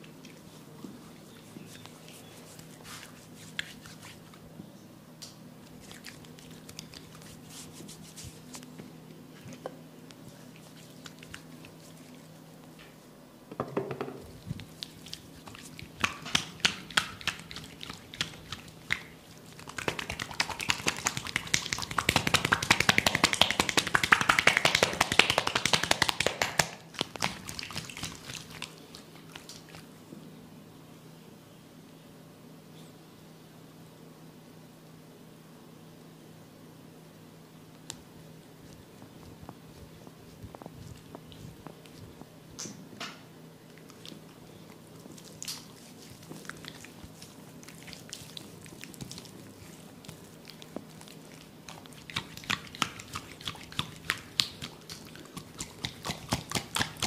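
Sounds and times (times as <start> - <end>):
hands rubbing oiled skin: 0.4 - 4.4, 5.6 - 8.8, 9.4 - 12.8, 14.3 - 29.8, 38.6 - 42.3, 43.9 - 57.0.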